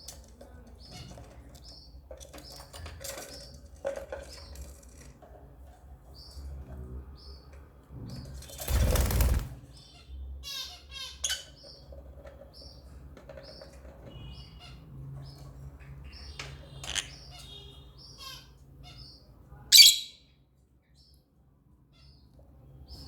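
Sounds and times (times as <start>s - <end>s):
lovebirds chirping: 8.7s - 20.4s
bird squawk: 19.7s - 20.2s.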